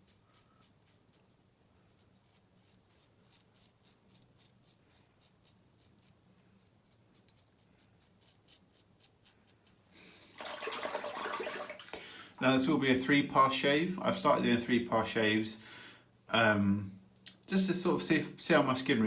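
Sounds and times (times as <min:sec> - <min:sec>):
razor scraping stubble: 0:00.0 - 0:09.9
running water: 0:10.2 - 0:12.8.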